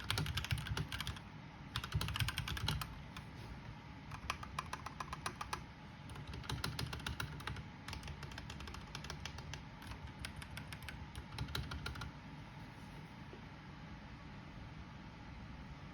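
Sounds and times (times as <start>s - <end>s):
mechanical keyboard typing: 0.0s - 3.3s, 4.1s - 12.2s.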